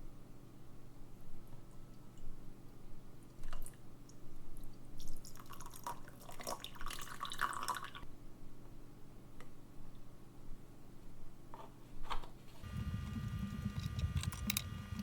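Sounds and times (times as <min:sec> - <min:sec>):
liquid dripping and splashing: 0:03.4 - 0:08.0
low steady hum: 0:12.5 - 0:15.0
small clicks of clock parts: 0:13.0 - 0:15.0.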